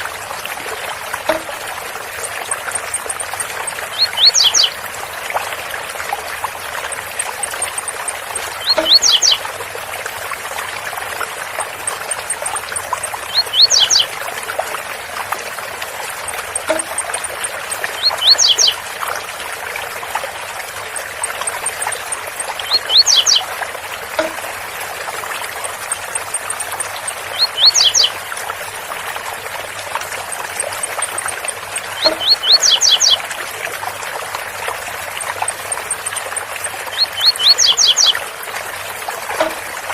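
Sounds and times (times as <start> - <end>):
small bird singing short song: 3.2 - 4.8, 7.4 - 9.4, 13.3 - 14.1, 18.0 - 18.8, 22.6 - 23.5, 26.1 - 28.2, 32.0 - 33.2, 36.9 - 38.2.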